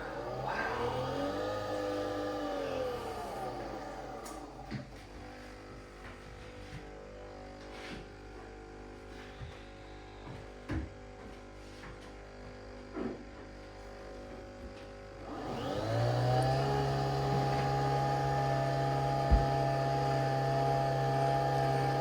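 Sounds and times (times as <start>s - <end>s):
coffee machine motor whining: 0.0s - 7.9s, 15.2s - 22.0s.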